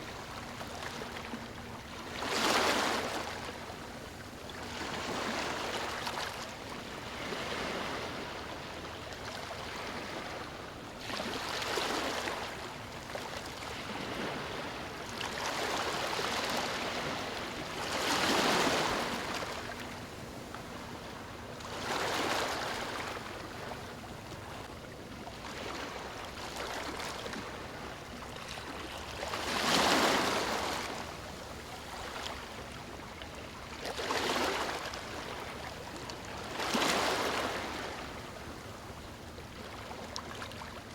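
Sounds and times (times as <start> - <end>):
ocean waves breaking on beach: 7.0 - 8.8, 13.5 - 20.0, 29.4 - 32.1.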